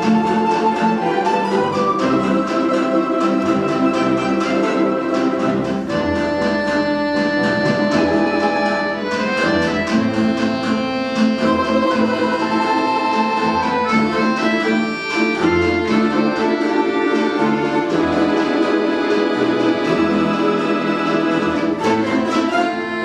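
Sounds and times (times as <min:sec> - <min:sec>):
folk instrument ensemble playing: 0:00.0 - 0:23.0.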